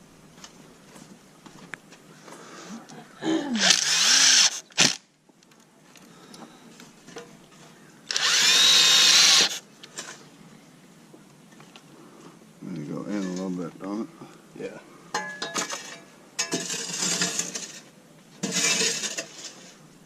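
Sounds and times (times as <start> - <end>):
power drill driving screws into wood: 3.6 - 5.0, 8.1 - 9.6.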